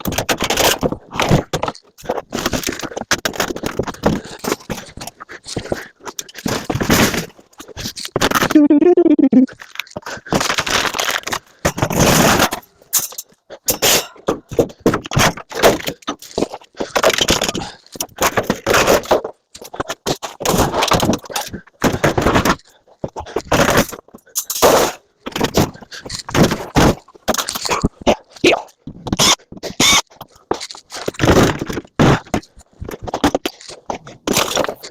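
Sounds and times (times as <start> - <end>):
scrap metal clattering and scraping: 10.3 - 17.2.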